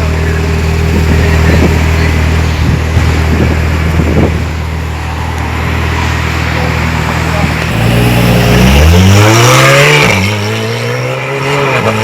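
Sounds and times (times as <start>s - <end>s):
car engine idling: 0.0s - 9.1s.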